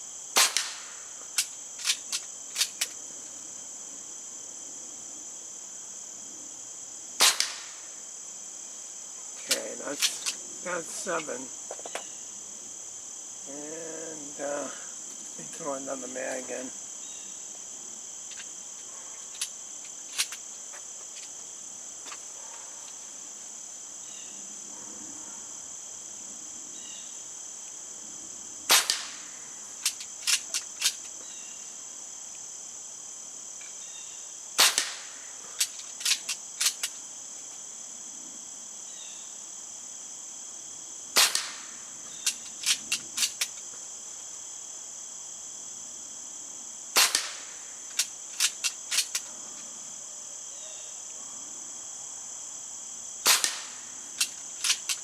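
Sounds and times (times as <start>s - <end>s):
crickets chirring: 0.0s - 55.0s
air pistol shots: 0.4s - 1.0s, 7.2s - 7.8s, 28.7s - 30.9s, 34.6s - 36.9s, 41.2s - 43.4s, 47.0s - 49.2s, 53.2s - 55.0s
bolt clicking: 29.8s - 31.1s, 42.2s - 43.6s, 47.9s - 49.3s, 54.2s - 55.0s.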